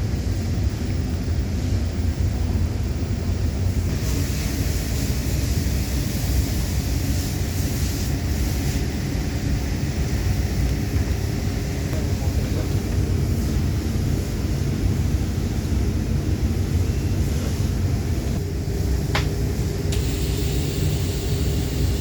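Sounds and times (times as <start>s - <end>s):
welding hiss: 3.9s - 9.6s, 19.9s - 22.0s.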